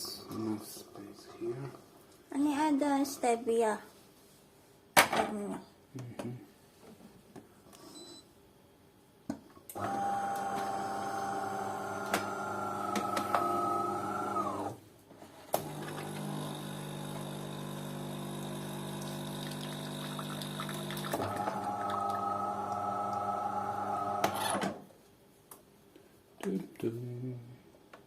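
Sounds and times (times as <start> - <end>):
coffee machine motor whining: 9.8 - 14.8, 15.6 - 24.6.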